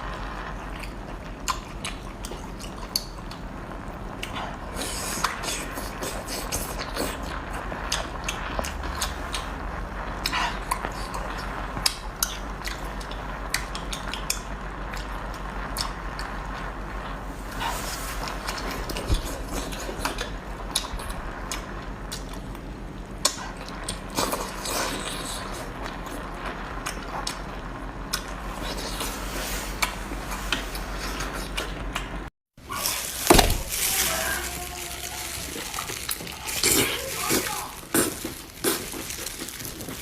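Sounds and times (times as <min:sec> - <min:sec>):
wet squelchy eating noises: 0:23.2 - 0:40.0.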